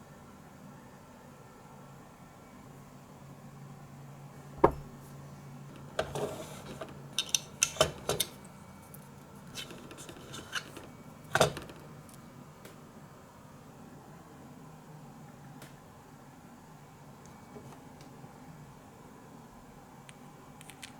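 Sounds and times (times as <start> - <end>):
sharp knock: 4.6 - 4.9.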